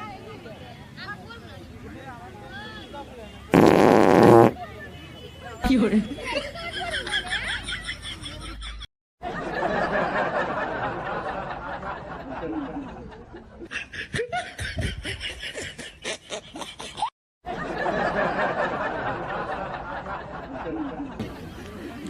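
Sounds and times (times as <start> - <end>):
people laughing: 5.8 - 22.0.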